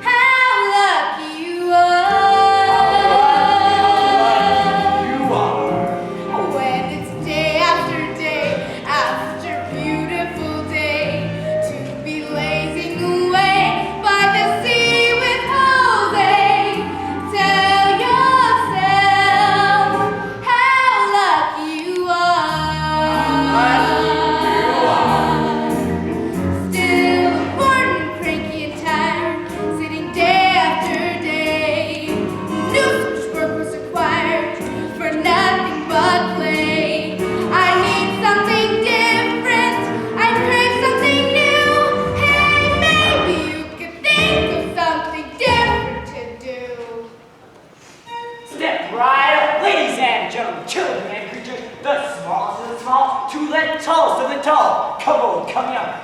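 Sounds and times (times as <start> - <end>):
woman singing: 0.0 - 5.4, 6.2 - 47.2
instrumental accompaniment: 1.7 - 46.5, 47.7 - 49.0
chorus of voices singing: 2.0 - 10.1, 22.5 - 43.8.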